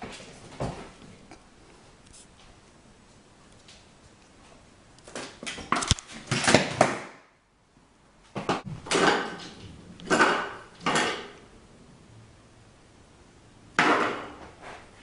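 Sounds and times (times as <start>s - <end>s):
household objects clattering: 8.4s - 11.3s.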